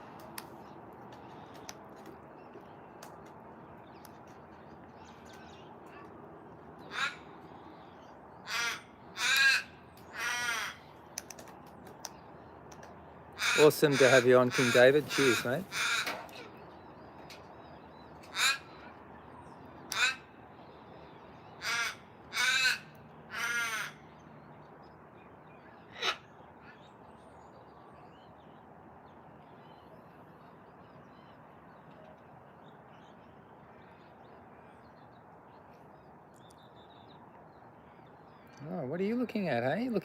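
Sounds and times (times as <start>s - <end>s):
raven cawing: 6.8s - 11.0s, 13.3s - 16.5s, 18.2s - 19.0s, 19.9s - 20.4s, 21.6s - 24.1s.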